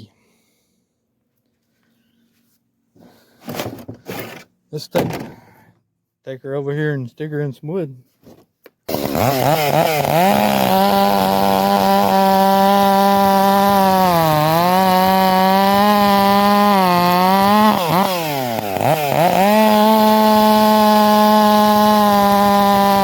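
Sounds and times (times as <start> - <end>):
chainsaw cutting wood: 8.8 - 23.0.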